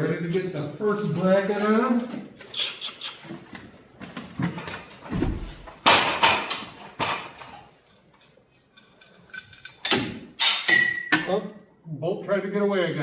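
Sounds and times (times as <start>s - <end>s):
metal knocks and clanks: 4.5s - 7.6s.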